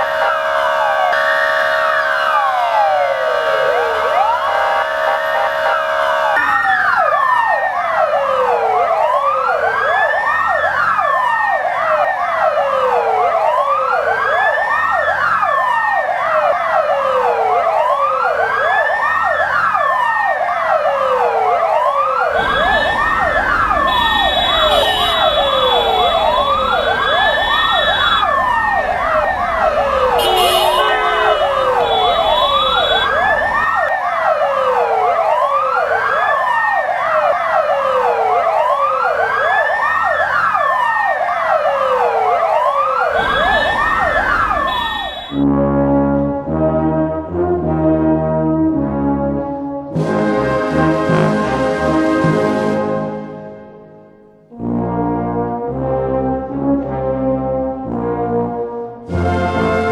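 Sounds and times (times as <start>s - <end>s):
fire engine sirens wailing: 0.0s - 53.4s, 54.5s - 59.9s.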